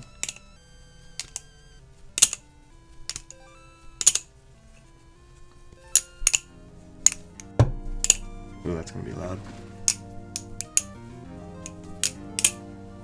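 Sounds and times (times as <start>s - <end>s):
quiet background music: 0.0s - 13.0s
butterfly knife metallic clicks: 0.1s - 0.4s, 1.2s - 1.5s, 2.2s - 2.5s, 4.0s - 4.3s, 5.9s - 8.3s, 9.8s - 11.0s, 11.6s - 12.6s.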